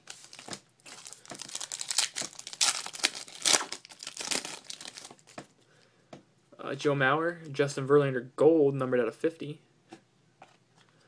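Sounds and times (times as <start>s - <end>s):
wrapper tearing and crinkling: 0.0s - 5.4s.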